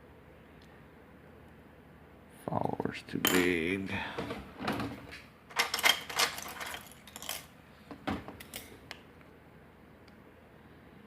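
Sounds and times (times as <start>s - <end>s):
small metal parts clinking: 5.5s - 7.5s.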